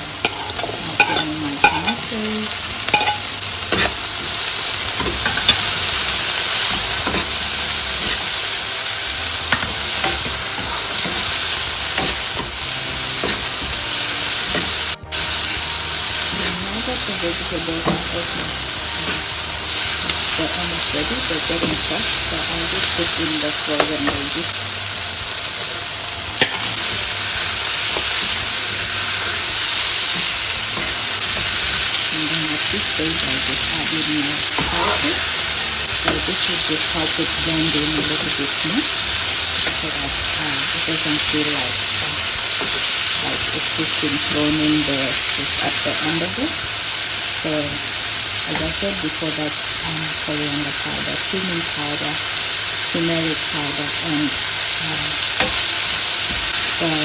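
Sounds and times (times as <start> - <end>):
vegetables sizzling in a pan: 0.0 - 57.0
utensil scraping and tapping pan: 0.2 - 2.1, 2.9 - 4.0.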